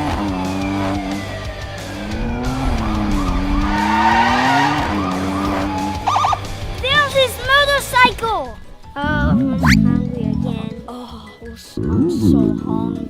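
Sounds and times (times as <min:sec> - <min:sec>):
racing car engine drone: 0:00.0 - 0:08.2
background music: 0:00.0 - 0:13.0
tyre skid sound effects: 0:01.9 - 0:07.1.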